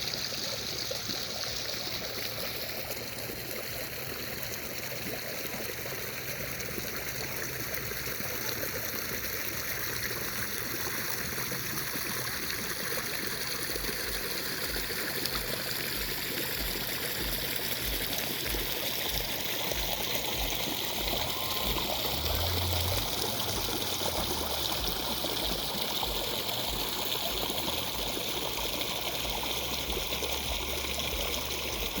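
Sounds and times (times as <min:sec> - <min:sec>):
river water flowing over stones: 0:00.0 - 0:32.0.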